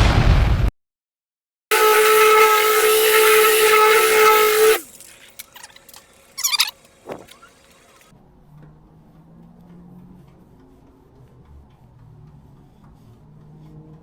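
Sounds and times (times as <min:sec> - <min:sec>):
electric polisher whining: 0:01.7 - 0:05.0.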